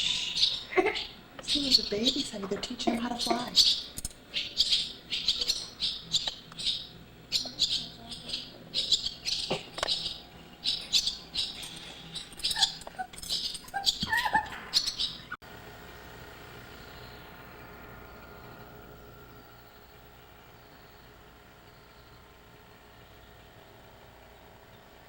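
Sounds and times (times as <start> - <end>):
swallows chirping: 0.0 - 15.4, 16.6 - 18.7, 19.3 - 25.0.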